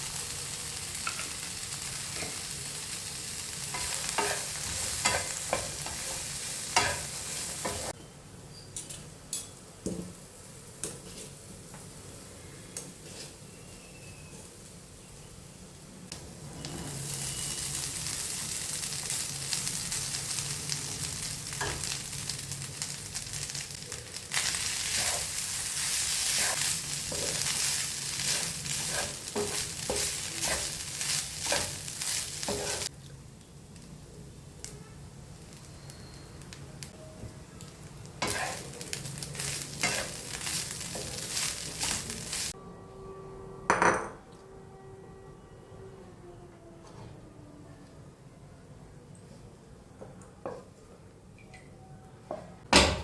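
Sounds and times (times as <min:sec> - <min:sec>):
food sizzling in a pan: 0:00.0 - 0:08.0, 0:09.5 - 0:42.6.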